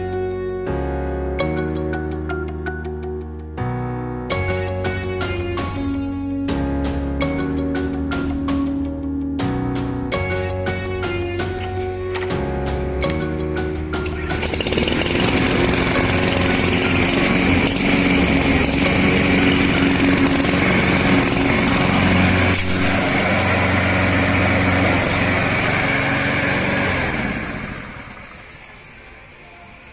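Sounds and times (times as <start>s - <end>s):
lawn mower engine running: 11.4s - 29.9s.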